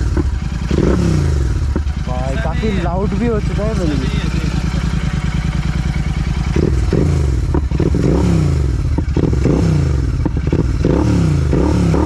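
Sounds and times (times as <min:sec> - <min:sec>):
sharp engine pops: 0:00.0 - 0:01.0, 0:01.6 - 0:02.0, 0:06.6 - 0:08.0, 0:10.2 - 0:10.6
motorcycle engine revving: 0:00.0 - 0:12.0.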